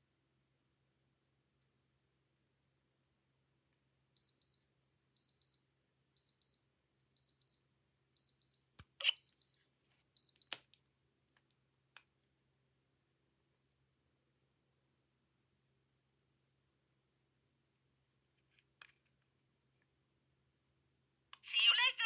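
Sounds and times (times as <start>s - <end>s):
digital watch alarm beeping: 4.2s - 4.6s, 5.2s - 5.6s, 6.2s - 6.6s, 7.2s - 7.6s, 8.2s - 9.6s, 10.2s - 10.6s.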